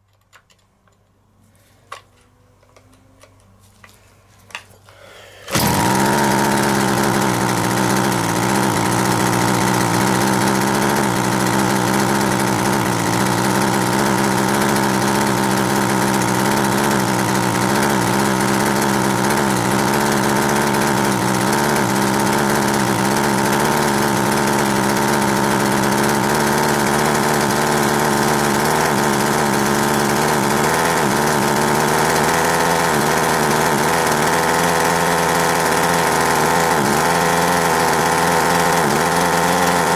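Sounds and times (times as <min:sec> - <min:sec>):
chainsaw engine at high revs: 0:05.0 - 0:39.9.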